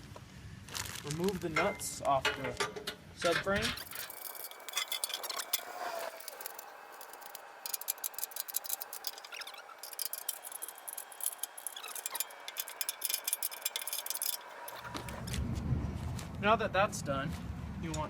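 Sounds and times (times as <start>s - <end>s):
wrench clicking on metal: 3.8s - 15.3s.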